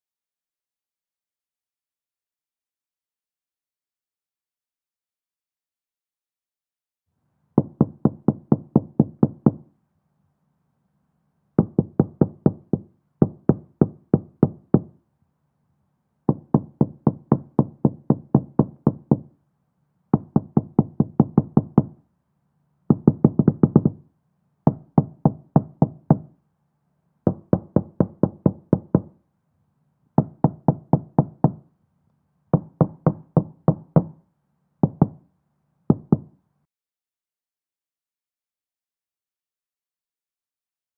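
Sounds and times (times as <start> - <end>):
muffled knocking on door: 7.6 - 9.7, 11.6 - 15.0, 16.3 - 19.3, 20.2 - 22.0, 22.9 - 24.0, 24.7 - 26.3, 27.3 - 29.2, 30.2 - 31.7, 32.6 - 34.2, 34.8 - 35.2, 35.9 - 36.4.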